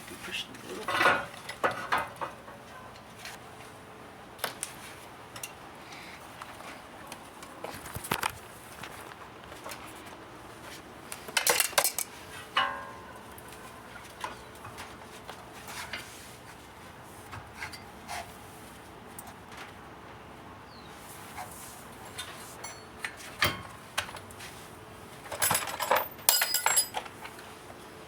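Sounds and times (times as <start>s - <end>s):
metal tools clinking: 22.1s - 23.7s, 25.2s - 27.4s
ringing metal clank: 25.4s - 27.0s.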